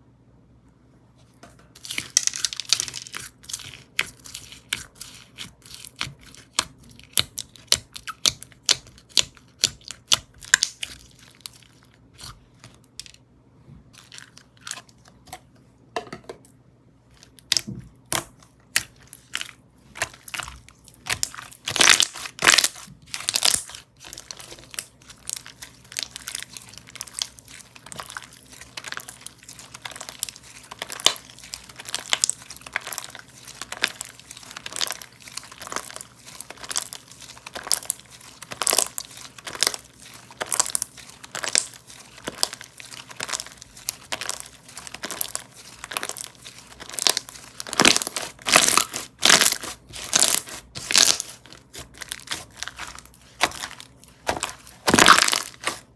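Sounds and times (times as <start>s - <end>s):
slime crackling and clicking: 20.0s - 55.8s.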